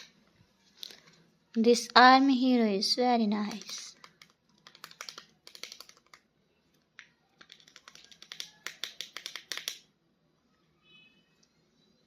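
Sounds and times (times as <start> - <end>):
plastic toys clicking: 3.4 - 6.2, 6.9 - 9.9.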